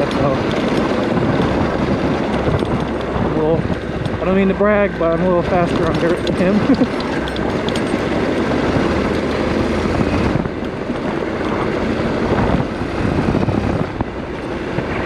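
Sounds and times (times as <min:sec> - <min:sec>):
motorcycle engine running: 0:00.0 - 0:15.0
wind rushing: 0:00.0 - 0:15.0.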